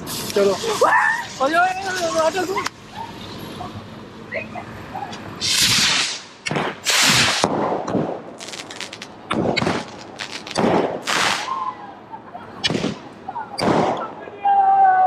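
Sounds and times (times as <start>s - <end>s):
small firework cracks: 5.4s - 11.7s, 12.6s - 14.2s
fireworks bangs and crackling: 5.4s - 11.8s, 12.6s - 14.3s.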